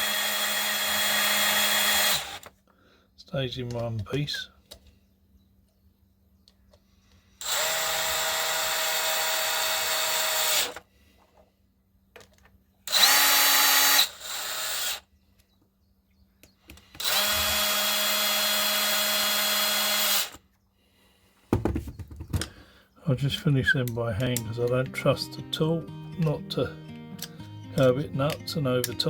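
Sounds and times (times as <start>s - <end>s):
power screwdriver driving screws: 0.0s - 2.5s, 7.4s - 10.8s, 12.9s - 15.0s, 17.0s - 20.4s.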